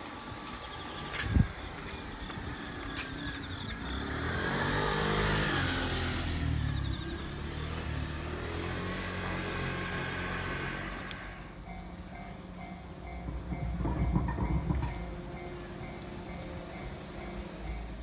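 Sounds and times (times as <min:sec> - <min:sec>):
steady engine noise: 0:00.0 - 0:11.6
vehicle driving past: 0:02.7 - 0:11.5.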